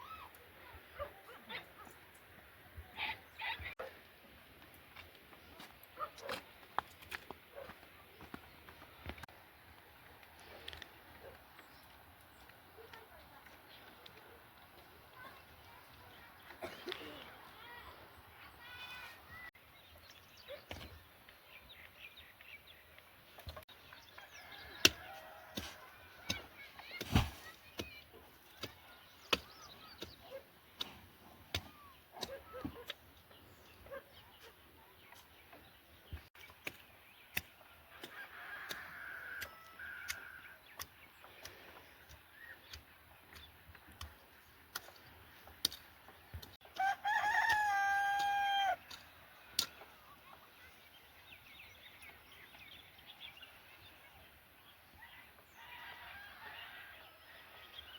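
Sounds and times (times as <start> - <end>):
rooster crowing: 38.1 - 40.4, 46.8 - 48.8, 55.6 - 57.6.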